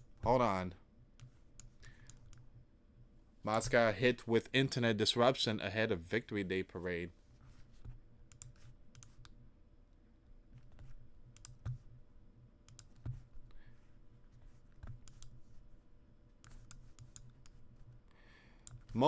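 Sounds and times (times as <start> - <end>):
low electrical hum: 0.0 - 19.0
mouse and keyboard clicking: 1.2 - 2.5, 8.3 - 9.4, 10.6 - 11.8, 12.7 - 13.3, 14.8 - 15.6, 16.4 - 17.6, 18.6 - 19.0.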